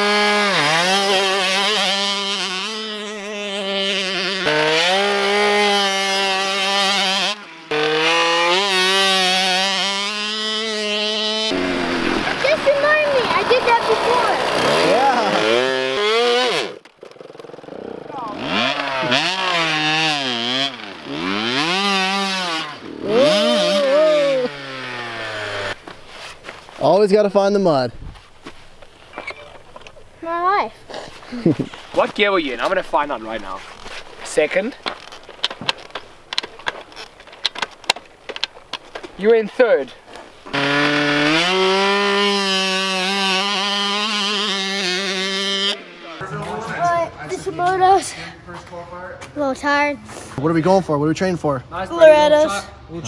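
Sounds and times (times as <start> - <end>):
dirt bike engine revving: 0.0 - 26.3, 40.0 - 46.3.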